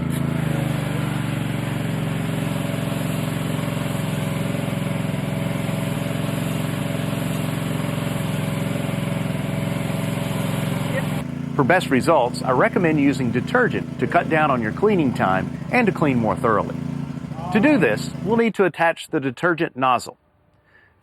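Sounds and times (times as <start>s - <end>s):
water spray hissing: 0.0s - 11.3s
pressure washer engine droning: 0.0s - 18.5s.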